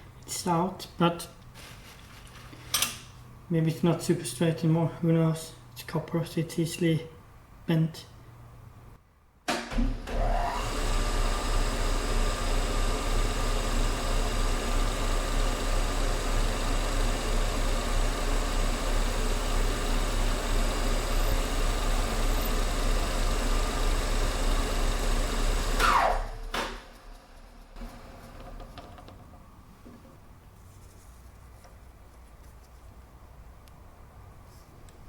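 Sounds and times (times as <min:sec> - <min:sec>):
electric motor humming and whining: 0:10.1 - 0:26.8.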